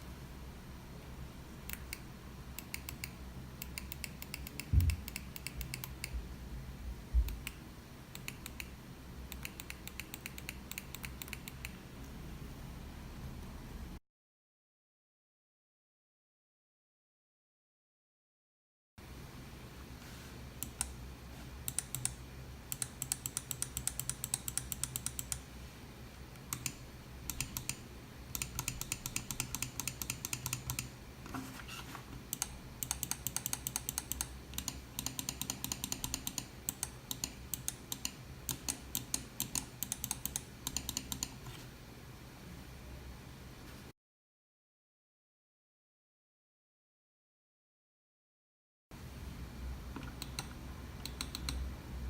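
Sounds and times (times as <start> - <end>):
mouse clicking: 1.7 - 2.0, 2.6 - 6.2, 7.3 - 11.8, 20.6 - 21.0, 21.6 - 25.4, 26.4 - 30.9, 32.3 - 41.6, 50.0 - 51.6.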